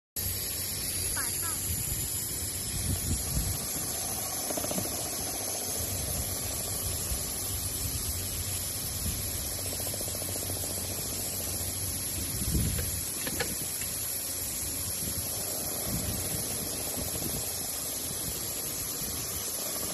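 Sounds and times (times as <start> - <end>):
sanding machine hissing: 0.2 - 19.9.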